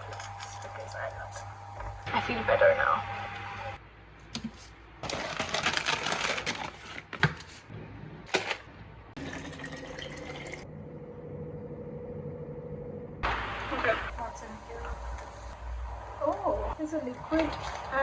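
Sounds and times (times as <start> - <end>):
packaging crinkling and rustling: 4.4 - 7.7, 8.3 - 8.7.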